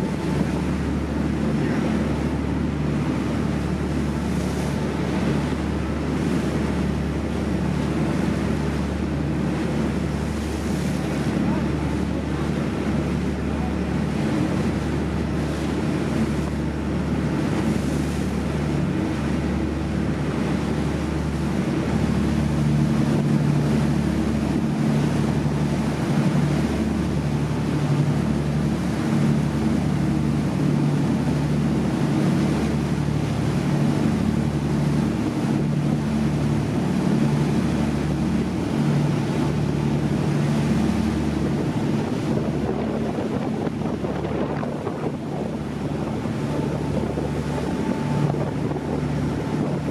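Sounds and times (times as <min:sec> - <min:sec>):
boat engine droning: 0:00.0 - 0:49.9
water rushing: 0:00.0 - 0:49.9
wind noise on microphone: 0:41.3 - 0:49.9.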